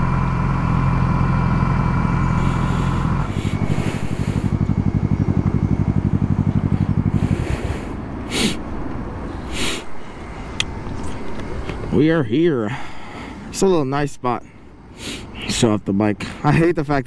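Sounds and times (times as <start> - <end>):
motorcycle engine idling: 0.0 - 9.3.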